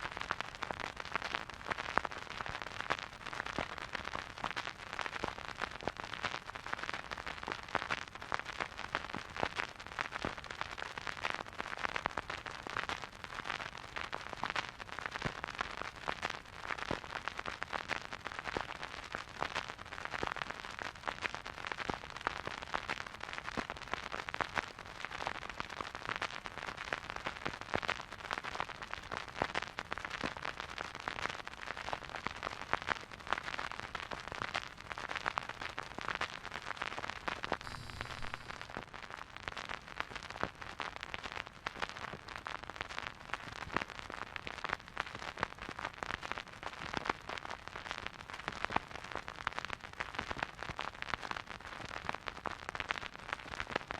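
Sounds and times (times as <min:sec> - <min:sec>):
soft record hiss: 0:00.0 - 0:53.9
vinyl record clicks and pops: 0:37.3 - 0:42.9.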